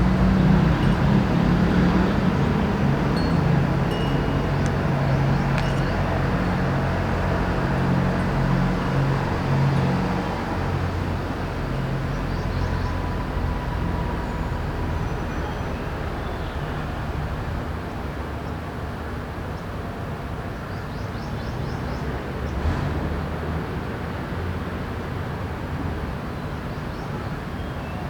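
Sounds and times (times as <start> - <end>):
vehicle engine humming: 0.0 - 12.7
urban traffic noise: 0.0 - 28.0
faint high chime tones: 3.1 - 6.2.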